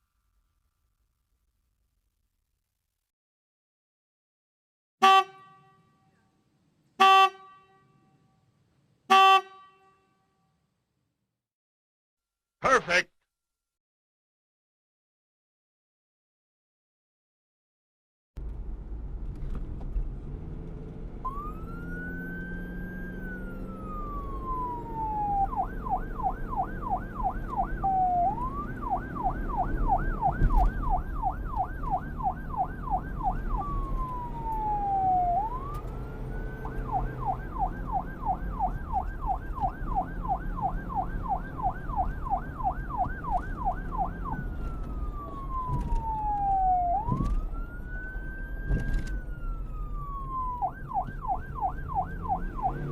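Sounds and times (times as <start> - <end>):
emergency siren wailing and yelping: 21.2 - 52.9.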